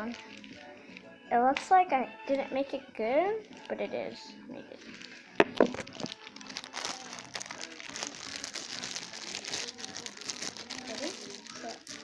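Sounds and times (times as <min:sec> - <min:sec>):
slime crackling and popping: 0:05.4 - 0:12.0.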